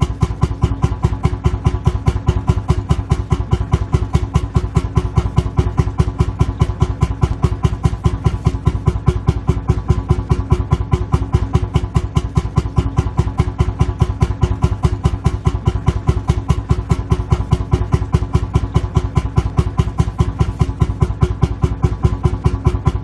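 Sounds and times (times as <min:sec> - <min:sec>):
tractor engine idling chug: 0:00.0 - 0:23.0.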